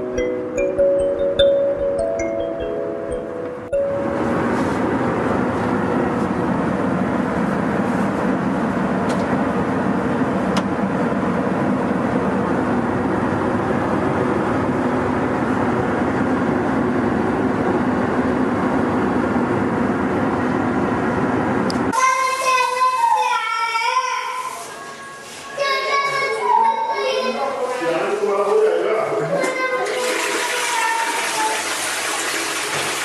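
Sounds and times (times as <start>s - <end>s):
moving passenger train rushing: 3.7s - 23.5s.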